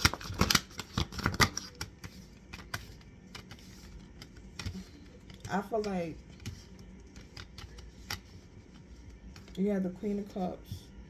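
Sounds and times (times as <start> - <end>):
cards being shuffled: 0.0 - 9.7.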